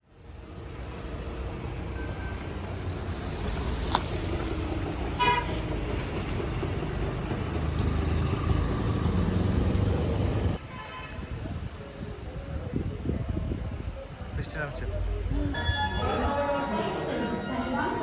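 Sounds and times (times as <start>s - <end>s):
road traffic rumble: 0.0s - 11.8s
vehicle horn toot: 5.2s - 5.6s.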